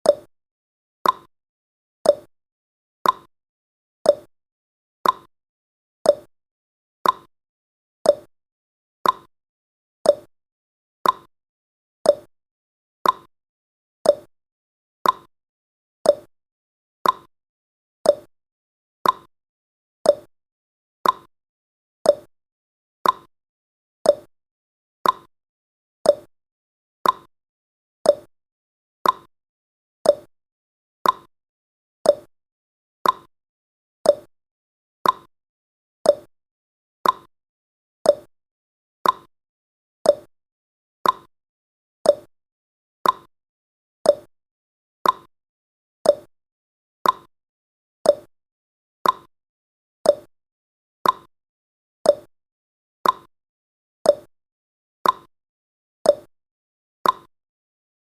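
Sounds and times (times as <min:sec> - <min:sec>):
clock ticking: 0:17.0 - 0:17.3, 0:33.0 - 0:33.3, 0:37.0 - 0:37.3, 0:41.0 - 0:41.3, 0:47.0 - 0:47.3, 0:49.0 - 0:49.3, 0:57.0 - 0:57.3.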